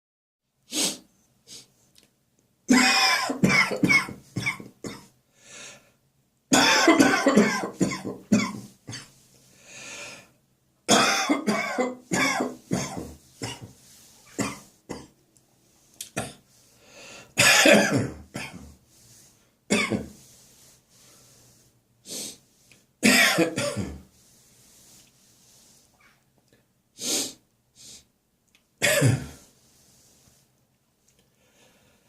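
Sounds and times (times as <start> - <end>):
man coughing: 2.7 - 5.0, 6.6 - 9.1, 10.9 - 13.7, 17.4 - 18.6, 23.0 - 24.0, 28.8 - 29.4.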